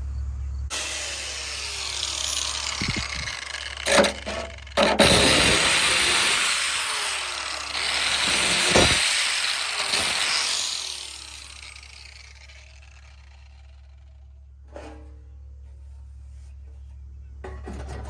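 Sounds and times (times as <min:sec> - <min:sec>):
power tool spinning down: 0:00.7 - 0:14.1.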